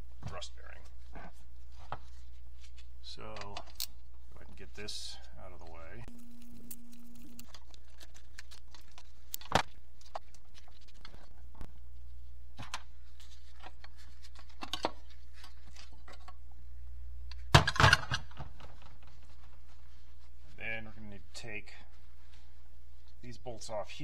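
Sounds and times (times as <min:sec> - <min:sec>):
steady low hum: 0:00.0 - 0:17.5.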